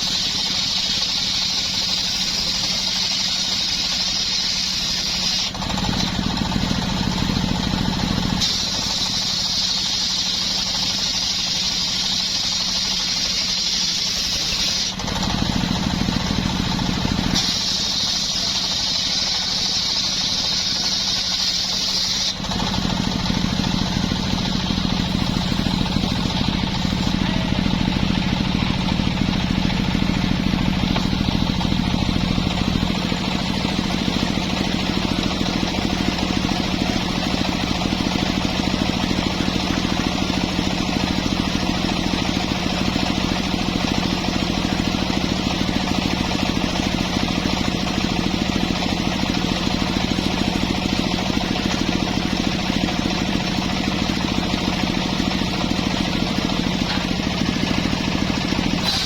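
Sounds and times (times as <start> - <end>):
chainsaw cutting wood: 56.1 - 59.0.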